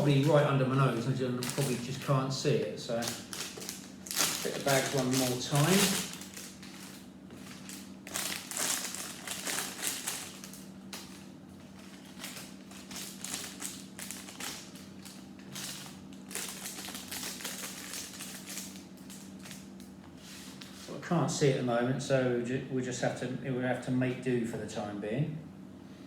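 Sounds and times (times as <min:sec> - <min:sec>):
plastic bags crinkling: 0:00.0 - 0:20.8.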